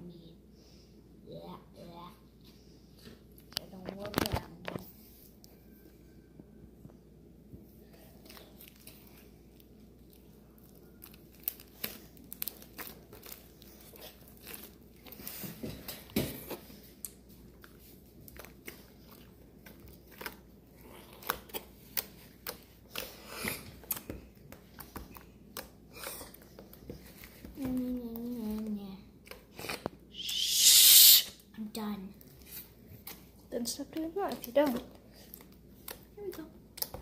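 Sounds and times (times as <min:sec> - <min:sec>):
crunching and chewing food: 0:07.8 - 0:30.0, 0:32.2 - 0:37.0.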